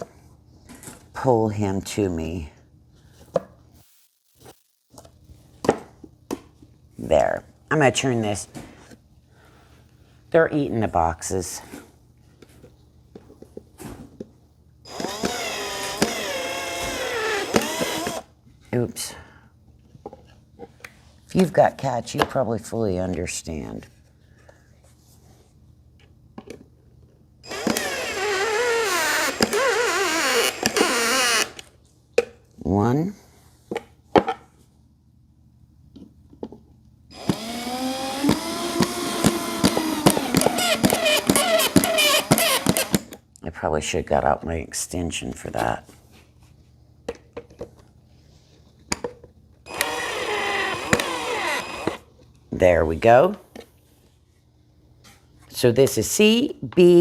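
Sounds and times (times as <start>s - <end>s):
power drill driving a screw: 14.9s - 18.3s, 27.4s - 31.6s, 37.1s - 43.1s, 49.7s - 52.0s.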